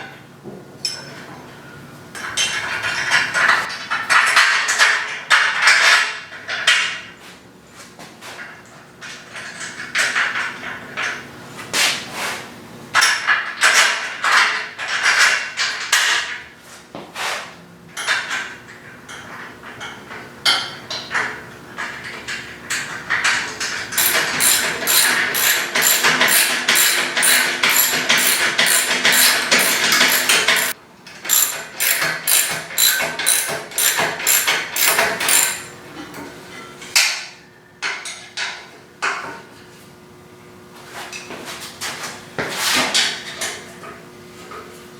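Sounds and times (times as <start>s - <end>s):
hammer blows: 24.0s - 35.7s
metal tool clatter: 24.0s - 35.7s.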